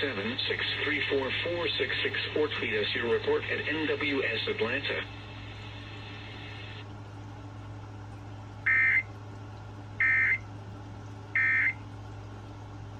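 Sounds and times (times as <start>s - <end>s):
faint radio hiss: 0.0s - 6.9s
steady low hum: 0.0s - 12.9s.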